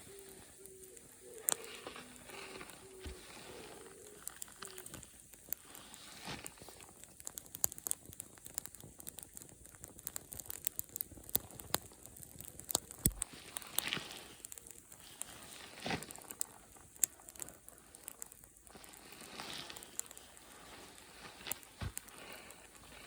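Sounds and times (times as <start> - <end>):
wood fire crackling and popping: 0.0 - 23.0.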